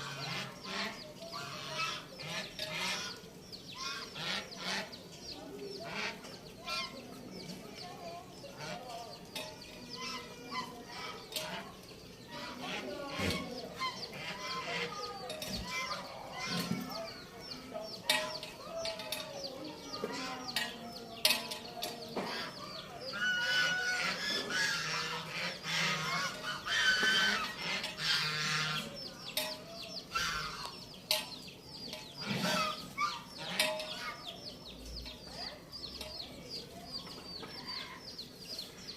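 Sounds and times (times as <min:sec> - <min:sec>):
fowl calling: 0:23.1 - 0:29.0, 0:30.1 - 0:30.8.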